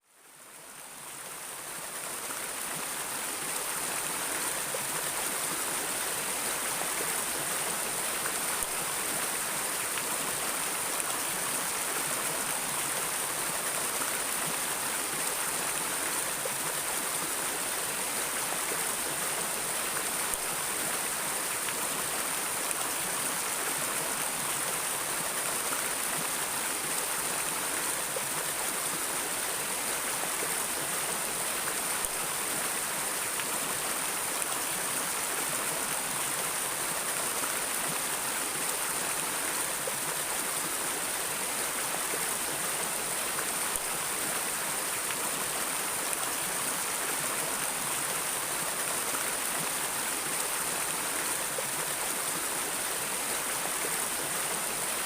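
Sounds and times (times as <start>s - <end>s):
river water flowing: 0.0s - 55.0s.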